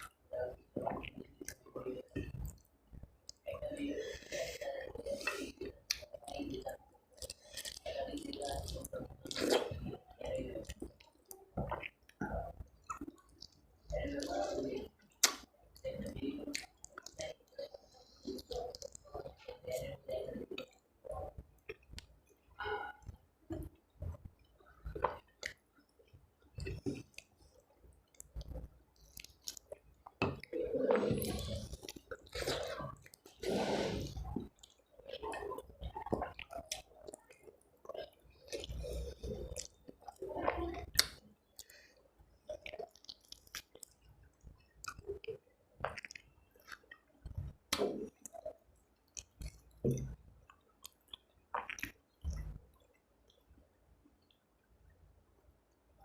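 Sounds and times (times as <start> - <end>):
chewing food: 0.0 - 54.7
wet mouth smacks and clicks: 15.2 - 15.5, 40.8 - 41.7.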